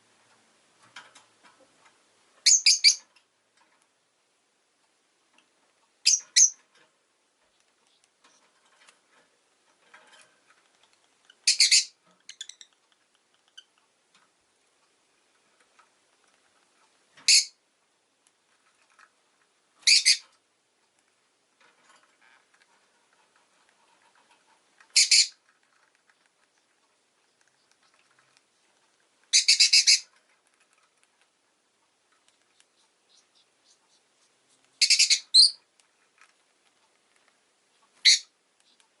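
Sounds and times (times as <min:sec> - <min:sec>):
faint rustling: 0:00.0 - 0:29.4, 0:35.6 - 0:39.0
lovebirds shrill calls: 0:02.4 - 0:03.0, 0:06.0 - 0:06.6, 0:11.4 - 0:12.7, 0:17.2 - 0:17.6, 0:19.8 - 0:20.2, 0:24.9 - 0:25.4, 0:29.3 - 0:30.1, 0:32.6 - 0:35.6, 0:38.0 - 0:38.8.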